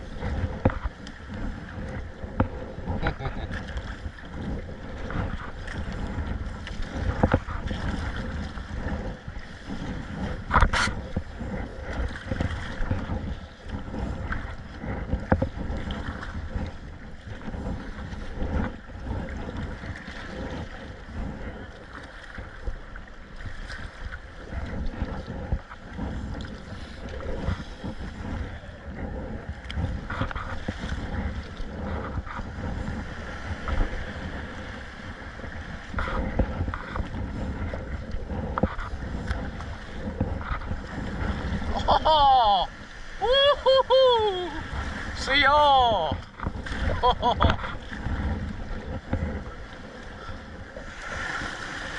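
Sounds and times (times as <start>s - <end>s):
water sloshing around a kayak: 0.0s - 51.9s
wind buffeting the microphone: 0.0s - 51.9s.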